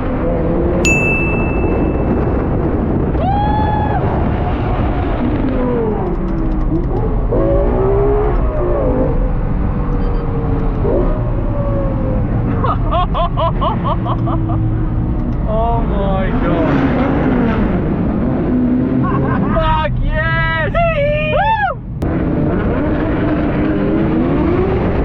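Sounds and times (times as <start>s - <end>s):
engine rev blips: 4.6s - 15.6s
sports car engine revving hard: 16.3s - 19.4s, 22.0s - 25.0s.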